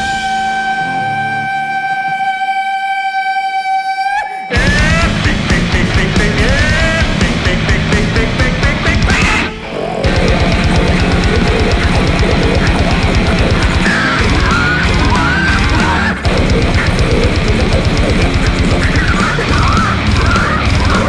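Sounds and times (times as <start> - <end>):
heavy metal music: 0.0 - 2.9, 4.1 - 21.0
high wavering squeals: 9.4 - 21.0.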